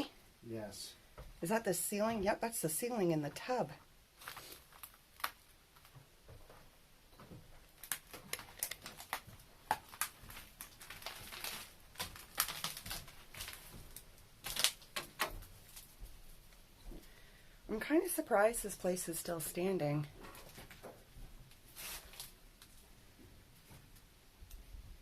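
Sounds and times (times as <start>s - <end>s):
debris crunching underfoot: 7.6s - 16.0s.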